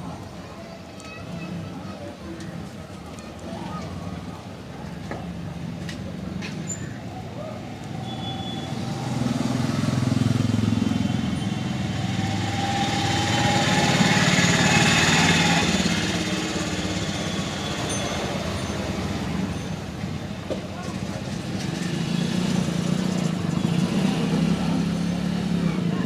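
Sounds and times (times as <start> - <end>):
vehicle engine passing: 8.6 - 19.3, 21.3 - 26.0.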